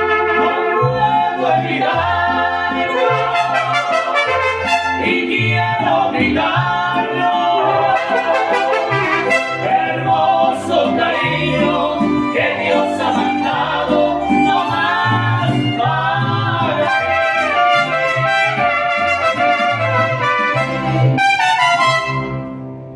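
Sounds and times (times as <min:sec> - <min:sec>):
trumpets playing melody: 0:00.0 - 0:01.5, 0:02.5 - 0:05.6, 0:07.7 - 0:10.3, 0:16.8 - 0:22.6
mariachi band playing: 0:00.0 - 0:22.9.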